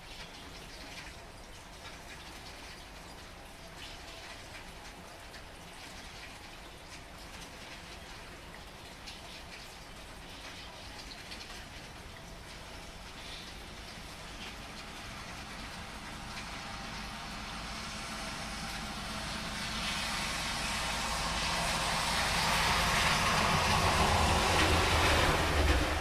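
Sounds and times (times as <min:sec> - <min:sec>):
heavy rain: 0:00.0 - 0:26.0
car passing on wet road: 0:08.5 - 0:26.0.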